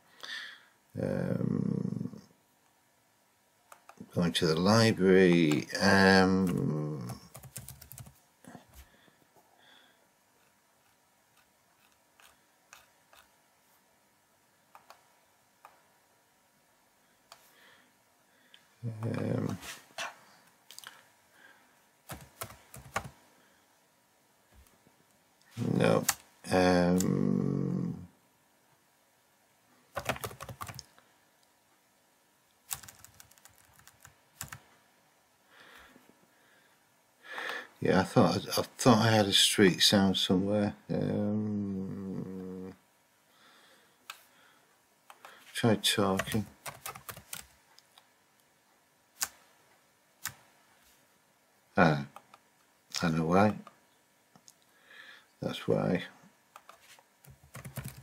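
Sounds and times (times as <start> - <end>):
keyboard typing: 6.4 - 8.2, 22.1 - 23.2, 29.9 - 30.9, 32.7 - 34.6, 46.1 - 47.5, 56.6 - 58.0
computer mouse and keyboard clicks: 10.4 - 13.3, 14.7 - 15.0, 56.6 - 58.0.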